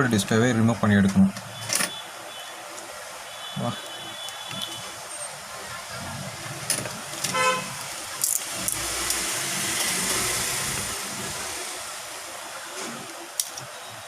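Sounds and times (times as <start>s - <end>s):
vehicle horn toot: 3.3s - 4.9s, 7.3s - 7.8s.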